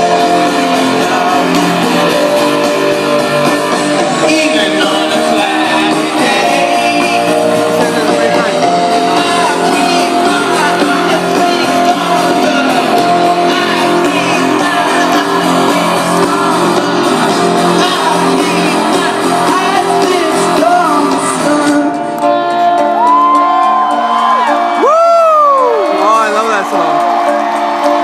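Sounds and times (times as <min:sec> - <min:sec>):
voices singing and shouting: 0:00.0 - 0:22.2
live rock band playing: 0:00.0 - 0:28.0.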